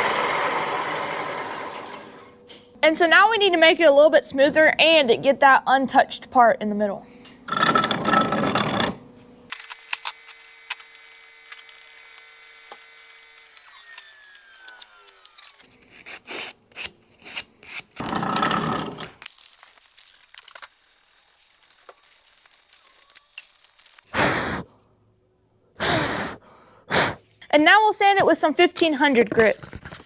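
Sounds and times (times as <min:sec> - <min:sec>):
power sander motor winding down: 0:10.3 - 0:15.6.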